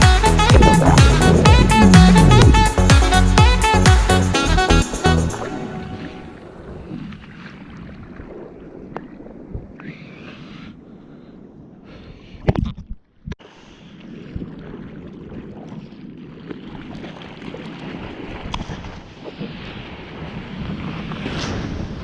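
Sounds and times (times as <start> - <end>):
wind buffeting microphone: 0.0 - 3.4
sea water rushing: 0.0 - 4.0, 5.0 - 8.9.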